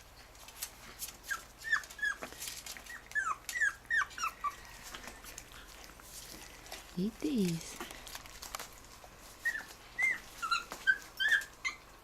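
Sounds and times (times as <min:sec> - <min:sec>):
puppy whimpering: 0:01.2 - 0:05.5, 0:09.4 - 0:12.0.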